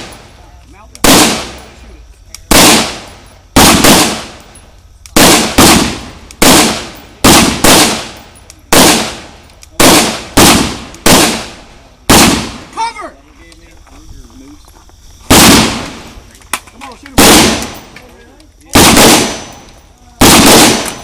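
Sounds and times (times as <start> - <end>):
rifle gunshots: 1.0 - 1.7, 2.5 - 4.5, 5.1 - 12.7, 15.3 - 16.2, 17.1 - 18.0, 18.7 - 21.0.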